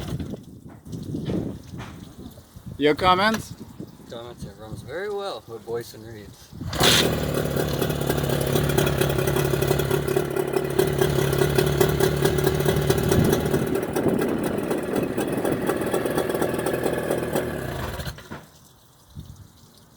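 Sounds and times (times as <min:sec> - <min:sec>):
outboard motor running: 0:06.6 - 0:18.4.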